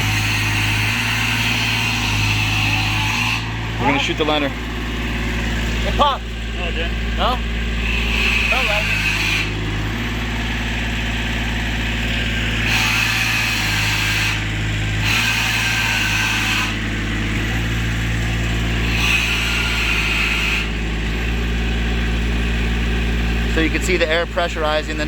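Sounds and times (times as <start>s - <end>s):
engine running: 0.0s - 25.0s.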